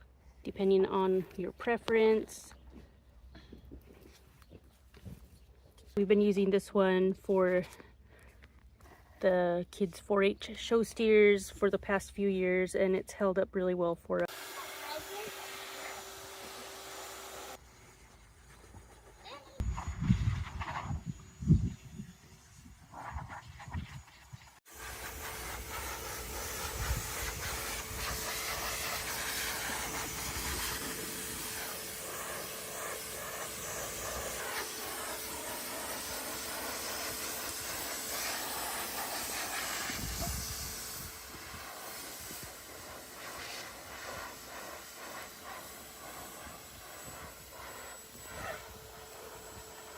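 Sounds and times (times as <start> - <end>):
pet dryer blowing: 14.2 - 17.6, 24.7 - 49.9.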